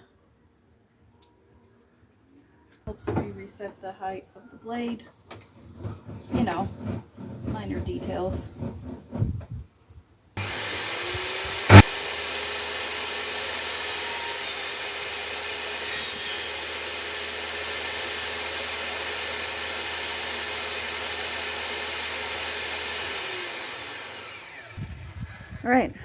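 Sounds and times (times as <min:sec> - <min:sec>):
power saw cutting wood: 0:10.4 - 0:25.2.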